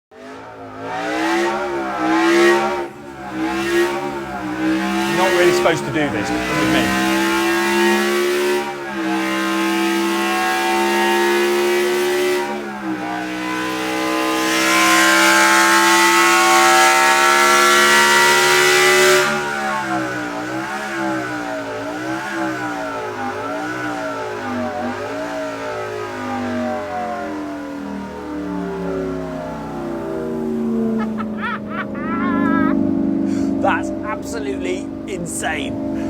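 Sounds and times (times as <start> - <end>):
car engine revving: 0.2 - 36.0.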